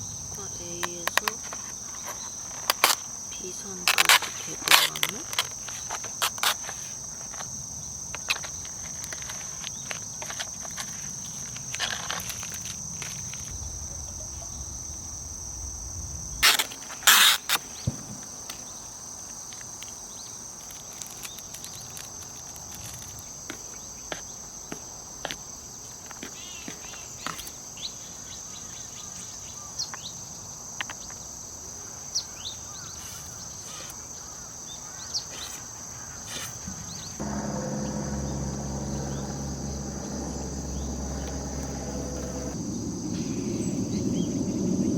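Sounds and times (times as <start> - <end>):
crickets chirping: 0.0 - 44.9.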